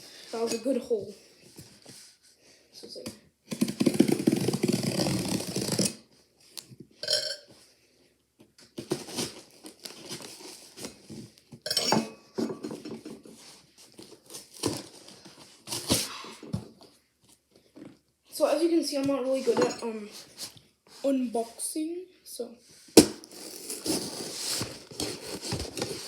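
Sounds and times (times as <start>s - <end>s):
cardboard scraping and tearing: 3.5s - 6.0s, 23.0s - 26.0s
cardboard being handled: 23.0s - 26.0s.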